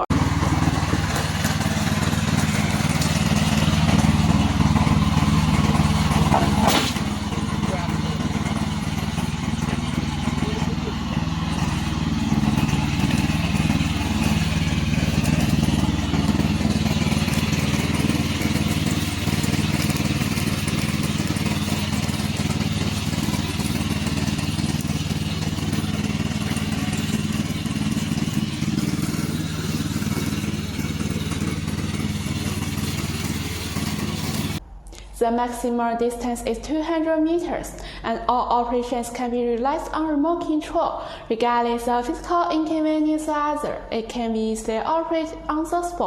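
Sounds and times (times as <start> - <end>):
mower engine droning: 0.0 - 34.7.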